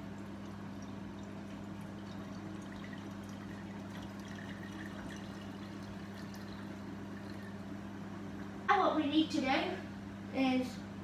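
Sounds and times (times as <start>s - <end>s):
liquid pouring into container: 0.0s - 8.6s
steady low hum: 0.0s - 11.0s.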